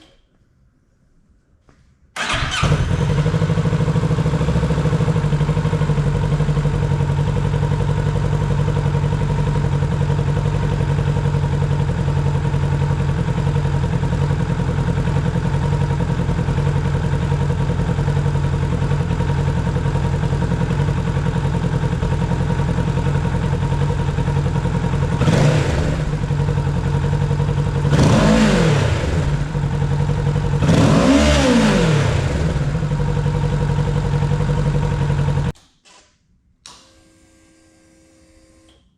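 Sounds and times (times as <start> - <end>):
motorcycle engine idling: 2.2 - 35.6
engine revving blips: 27.9 - 29.5, 30.6 - 32.8.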